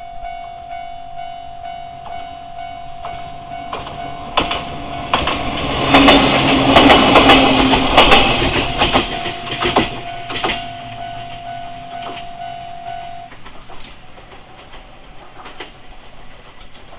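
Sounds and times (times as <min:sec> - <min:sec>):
train wheels clacking on rail joints: 0:03.0 - 0:16.9
level crossing alarm tone: 0:08.7 - 0:13.3.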